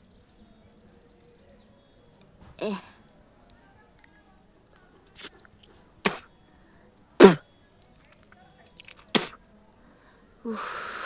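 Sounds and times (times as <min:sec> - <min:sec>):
woman sneezing: 0:06.0 - 0:06.3, 0:07.2 - 0:07.4, 0:09.1 - 0:09.4
long breathy sound: 0:09.8 - 0:11.0.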